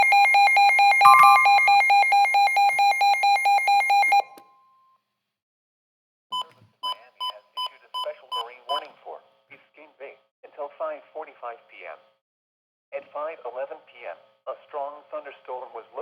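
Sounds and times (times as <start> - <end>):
rapid electronic alarm beeping: 0.0 - 4.2.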